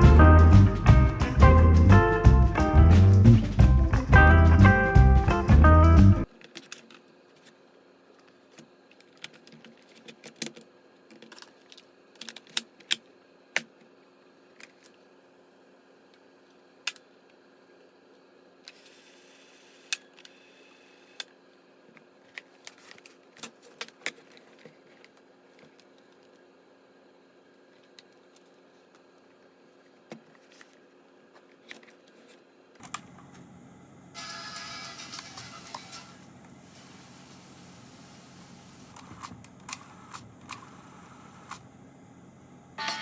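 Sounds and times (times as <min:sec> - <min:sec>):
background music: 0:00.0 - 0:06.3
small parts being handled: 0:06.3 - 0:07.6, 0:08.2 - 0:13.0, 0:21.9 - 0:26.4, 0:27.7 - 0:32.4.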